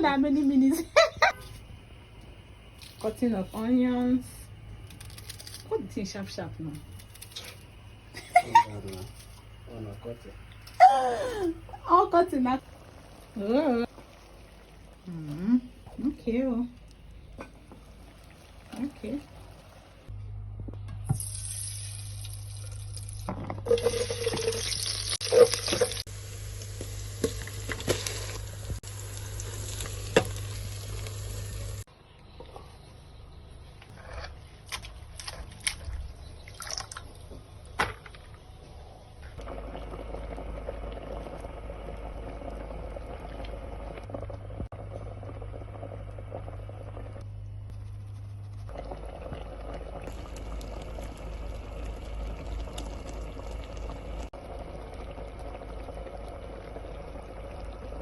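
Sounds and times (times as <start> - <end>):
water running from a tap: 9.8 - 16.6, 21.1 - 31.9.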